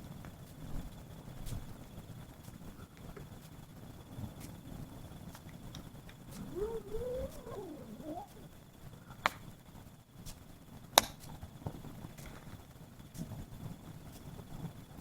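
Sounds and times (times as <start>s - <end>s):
wavering pitched sound: 6.4s - 8.5s.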